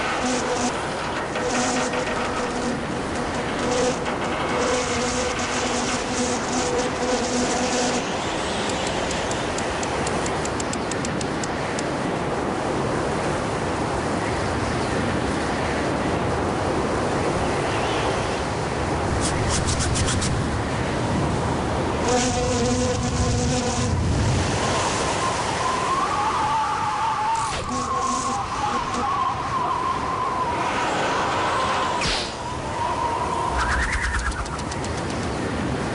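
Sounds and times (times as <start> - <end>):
low-pitched hum: 0.0 - 9.0
rushing wind: 0.0 - 35.9.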